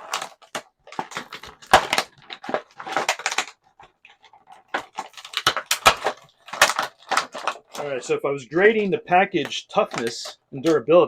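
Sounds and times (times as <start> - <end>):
scissors cutting plastic: 0.0 - 10.9
plastic packaging crinkling: 0.0 - 11.0
sharp plastic snaps: 8.8 - 11.0.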